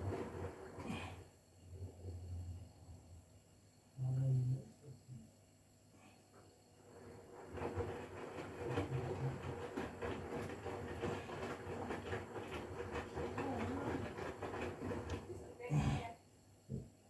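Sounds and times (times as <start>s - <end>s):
washing machine rumbling and rattling: 0.0s - 1.4s, 6.8s - 16.1s.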